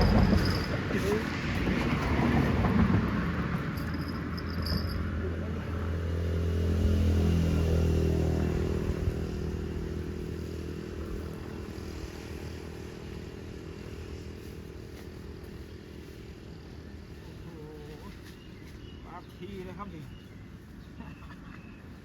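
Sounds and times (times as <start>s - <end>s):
passing vehicle engine accelerating: 0.0s - 14.9s.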